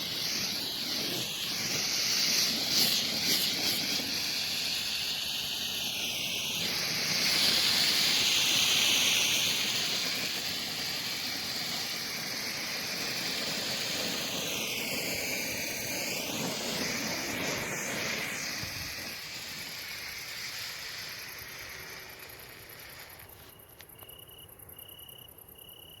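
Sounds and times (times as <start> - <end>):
flare burning with hiss: 0.0 - 23.8.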